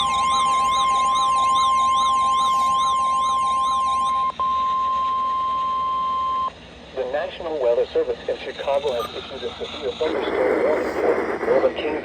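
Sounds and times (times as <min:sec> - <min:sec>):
warbling siren-like alert: 0:00.0 - 0:06.4
pulsing low beep: 0:00.0 - 0:06.5, 0:08.6 - 0:11.6
steady alarm tone: 0:00.0 - 0:06.5, 0:08.4 - 0:12.0.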